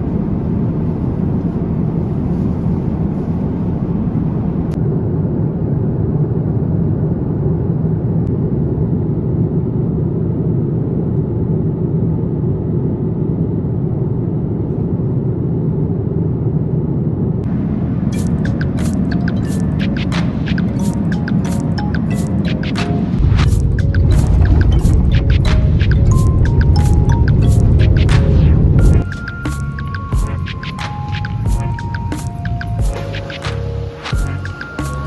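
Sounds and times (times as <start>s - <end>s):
jet airliner cabin rumble: 0.0s - 4.8s, 17.4s - 32.7s.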